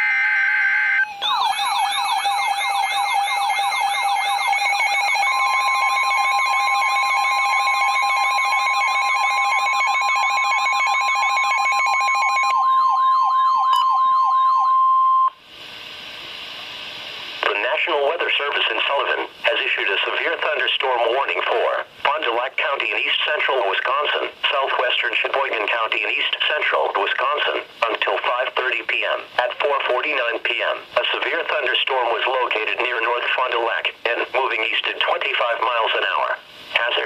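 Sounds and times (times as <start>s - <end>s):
steady single-pitch alert tone: 0.0s - 15.4s
faint radio hiss: 15.4s - 37.0s.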